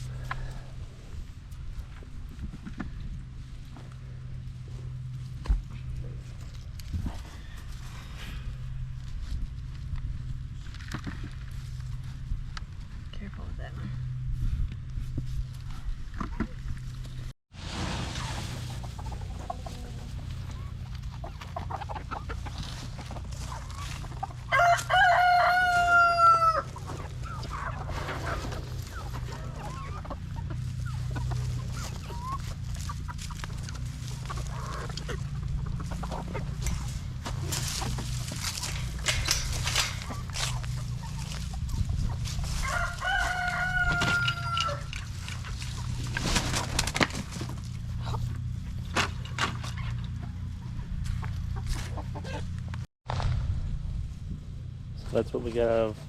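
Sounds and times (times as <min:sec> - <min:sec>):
rooster crowing: 0:24.4 - 0:26.8, 0:42.5 - 0:44.9
low rumble: 0:44.9 - 0:55.1.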